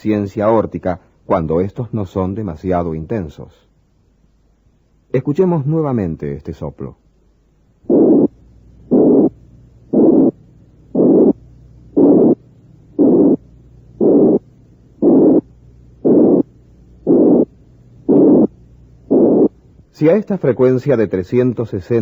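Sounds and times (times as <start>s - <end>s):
high-pitched heart murmur hisses: 7.8s - 19.6s.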